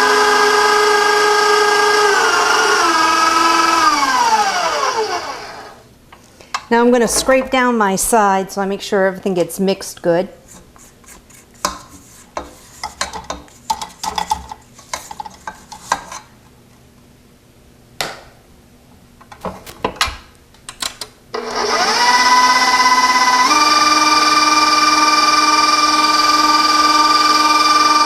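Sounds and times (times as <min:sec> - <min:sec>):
stand mixer motor whining: 0:00.0 - 0:05.8, 0:21.4 - 0:28.0
spatula scraping mixing bowl: 0:10.4 - 0:14.0.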